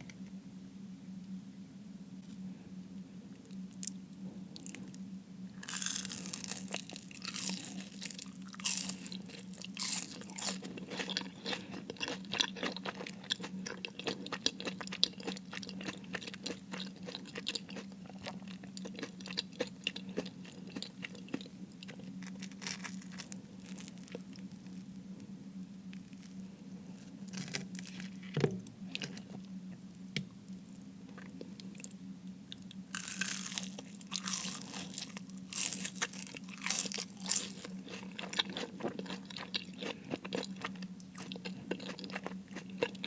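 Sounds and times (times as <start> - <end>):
crunching crispy food: 5.6 - 29.5, 32.6 - 43.0.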